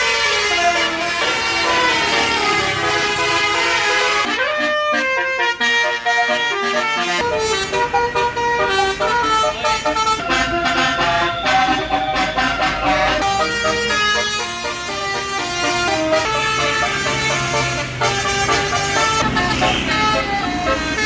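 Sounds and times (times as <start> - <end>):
musical horn playing a tune: 0.0 - 21.0
low engine rumble: 0.6 - 4.3.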